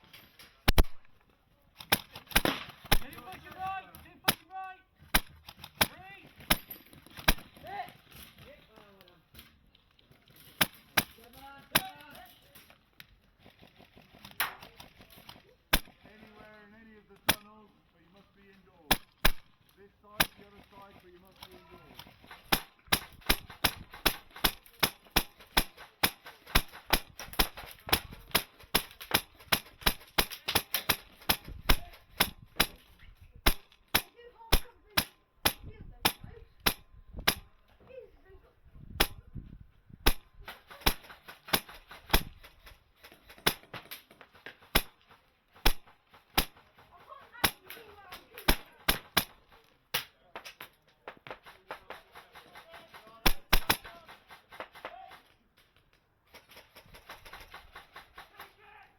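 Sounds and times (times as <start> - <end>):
airsoft rifle shots: 0.7 - 1.1, 1.8 - 7.8, 10.6 - 12.2, 13.4 - 16.5, 17.2 - 17.6, 18.8 - 37.6, 39.0 - 39.2, 40.0 - 50.6, 51.2 - 55.2.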